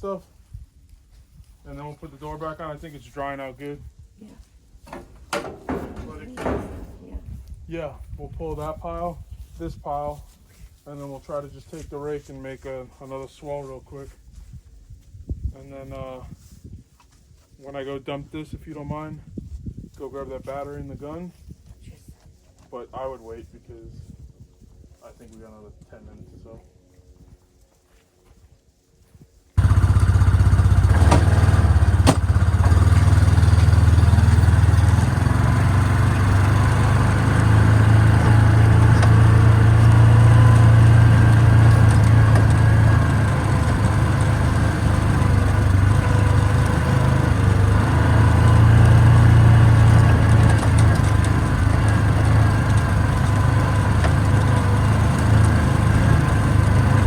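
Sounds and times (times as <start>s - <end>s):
utility vehicle engine running: 4.9s - 7.2s, 29.6s - 57.0s.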